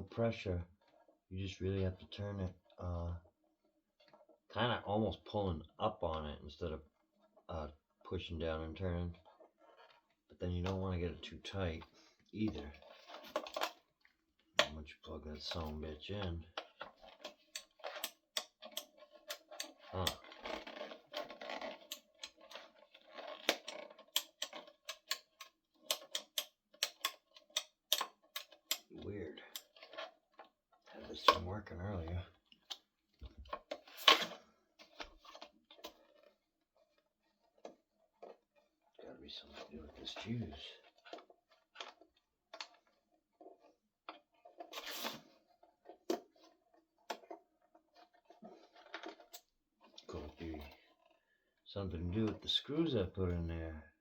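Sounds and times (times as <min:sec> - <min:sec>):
rustling: 0:09.1 - 0:53.5
plastic parts clicking and rattling: 0:11.8 - 0:14.8, 0:16.5 - 0:38.7
scraping rustle: 0:15.3 - 0:25.4
sharp clicks and taps: 0:23.4 - 0:28.9.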